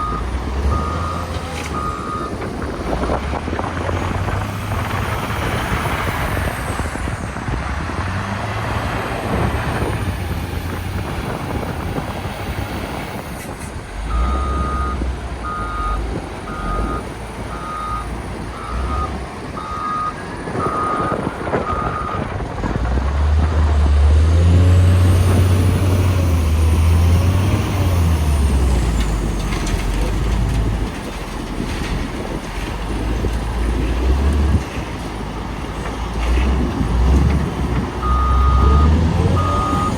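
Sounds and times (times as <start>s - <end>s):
diesel engine running: 0.0s - 39.9s
reversing alarm beeps: 17.6s - 22.2s, 38.0s - 39.9s.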